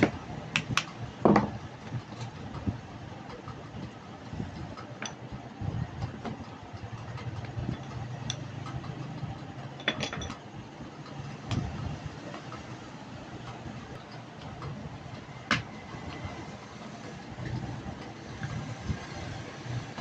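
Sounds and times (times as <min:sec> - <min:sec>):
low background hum: 0:00.0 - 0:19.0
small hard parts clinking: 0:06.8 - 0:10.5.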